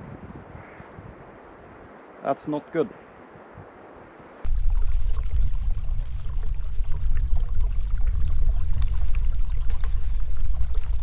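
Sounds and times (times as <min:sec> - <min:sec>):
wind buffeting microphone: 0:00.0 - 0:01.9, 0:04.5 - 0:11.0.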